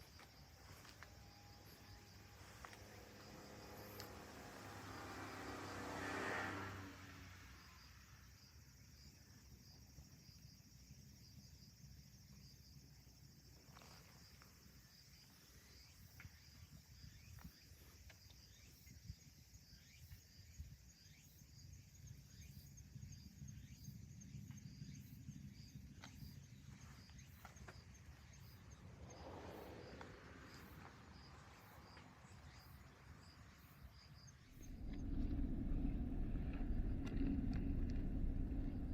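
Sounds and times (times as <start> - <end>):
low rumble: 34.4 - 38.9.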